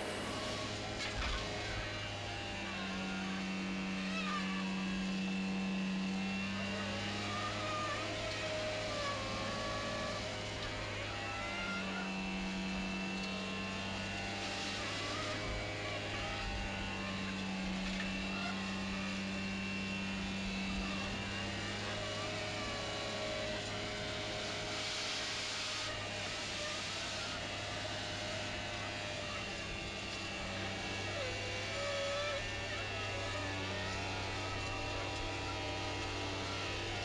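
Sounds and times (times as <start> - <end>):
excavator truck low drone: 0.0 - 6.0
machinery whining: 0.0 - 37.0.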